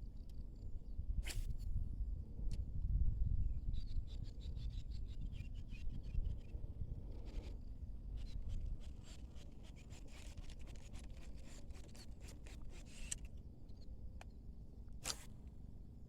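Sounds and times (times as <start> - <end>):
light clicks and scraping: 8.2 - 14.4.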